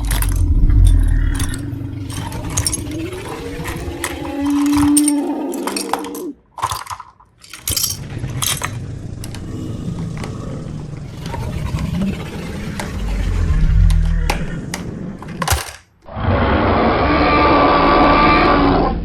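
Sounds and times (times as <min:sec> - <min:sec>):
toy pieces clicking and clinking: 0:00.0 - 0:10.6, 0:12.7 - 0:13.2, 0:13.8 - 0:15.9.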